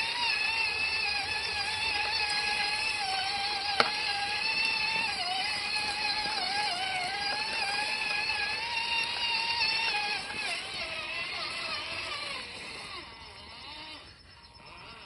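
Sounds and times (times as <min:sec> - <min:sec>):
electric motor whining: 0:00.0 - 0:15.0.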